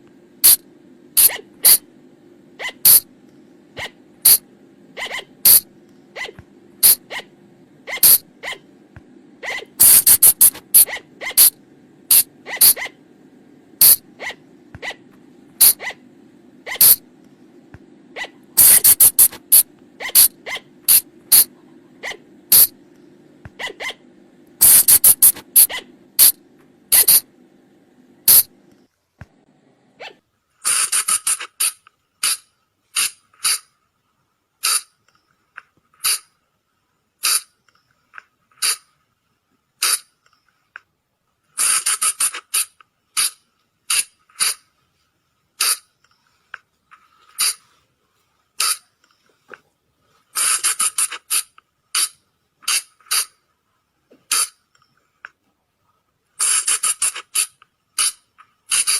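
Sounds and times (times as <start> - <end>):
faint low hum: 0.0 - 30.6
animal short sharp squeaks: 1.2 - 1.8, 2.6 - 3.1, 3.8 - 4.4, 5.0 - 7.3, 7.9 - 8.7, 9.4 - 13.0, 13.8 - 16.0, 16.7 - 17.0, 18.2 - 22.8, 23.6 - 24.0, 24.6 - 27.2, 28.3 - 28.5, 30.0 - 33.8, 34.6 - 35.0, 36.0 - 36.4, 37.2 - 37.6, 38.6 - 38.9, 39.8 - 40.2, 41.6 - 44.7, 45.6 - 45.9, 47.4 - 47.7, 48.6 - 48.9, 50.4 - 53.4, 54.3 - 54.6, 56.4 - 58.9.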